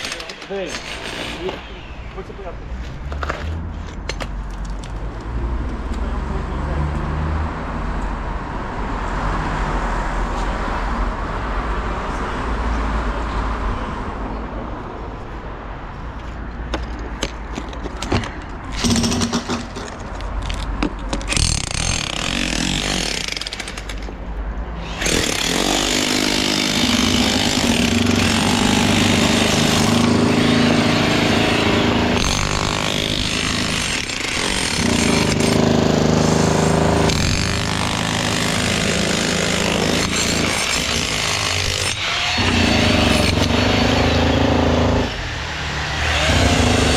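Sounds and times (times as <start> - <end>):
construction power tool running: 0.0 - 2.6, 18.7 - 20.0, 24.8 - 46.9.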